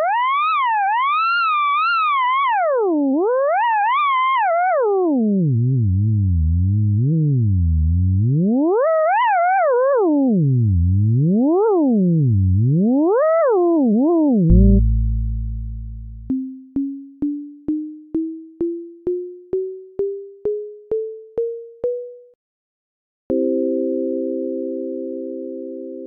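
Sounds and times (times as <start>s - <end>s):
chord of pure tones: 14.5s - 22.3s
low synthesized tone: 14.5s - 22.3s
short plucked synth notes rising: 14.5s - 22.3s.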